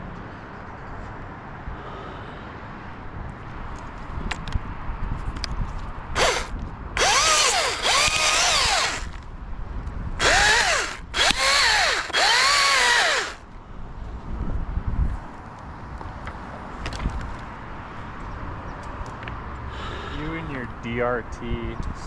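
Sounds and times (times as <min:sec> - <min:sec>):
chainsaw revving: 0:06.2 - 0:09.2, 0:10.2 - 0:13.4.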